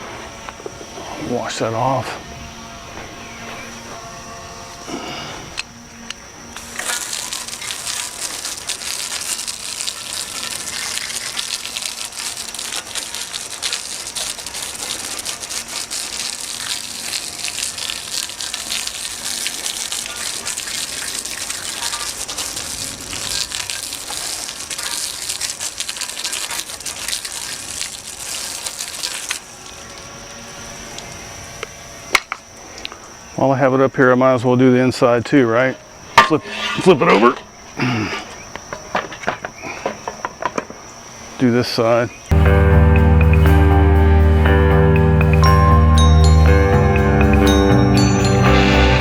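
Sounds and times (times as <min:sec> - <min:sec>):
water spraying onto a wheel: 0:06.6 - 0:29.9.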